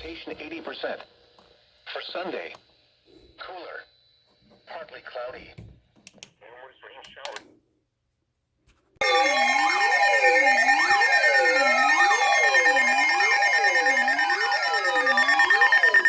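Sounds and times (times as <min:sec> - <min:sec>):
steady beeping tones: 0:09.0 - 0:16.0
wailing alert tone: 0:09.0 - 0:16.0.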